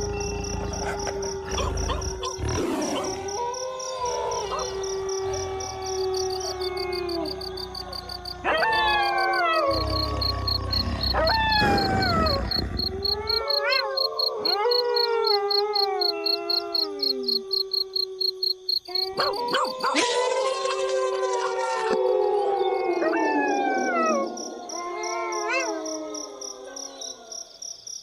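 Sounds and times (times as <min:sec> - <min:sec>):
wolves yipping: 0:00.0 - 0:05.4, 0:06.1 - 0:17.2, 0:18.9 - 0:20.2
wolves howling: 0:00.0 - 0:27.3.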